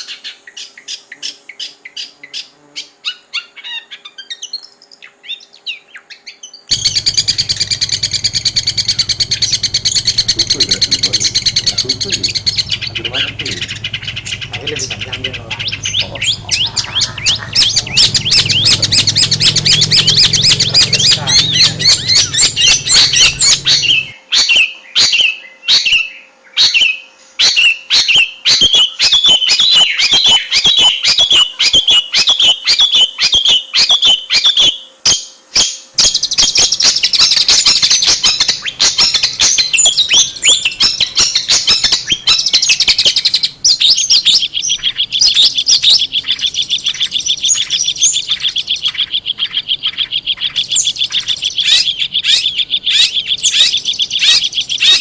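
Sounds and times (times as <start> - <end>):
shrike singing chattering song: 6.7 - 24.2, 29.1 - 55.0.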